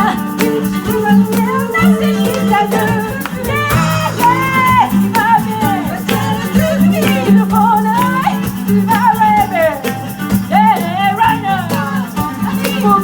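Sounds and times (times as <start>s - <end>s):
lead line with bent notes: 0.0s - 8.2s
live band instrumental: 0.0s - 13.0s
shaker rhythm: 0.0s - 13.0s
bass line: 1.6s - 7.8s.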